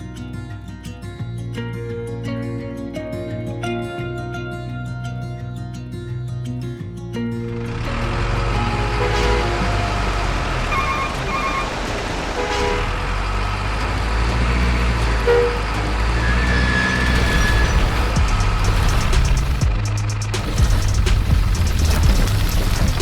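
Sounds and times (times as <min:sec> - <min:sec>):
truck engine rumbling: 0:07.4 - 0:23.0
brief tone: 0:08.8 - 0:11.8
reversing alarm beeps: 0:09.8 - 0:11.8.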